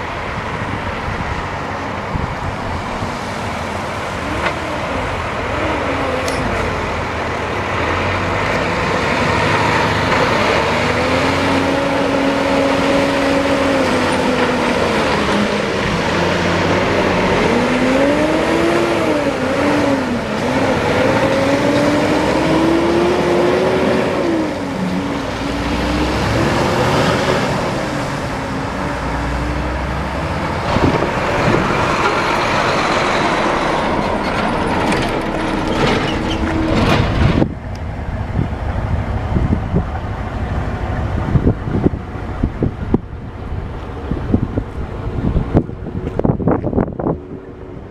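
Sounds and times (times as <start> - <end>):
road rumble: 0.0 - 47.9
truck engine shifting gears: 0.0 - 47.9.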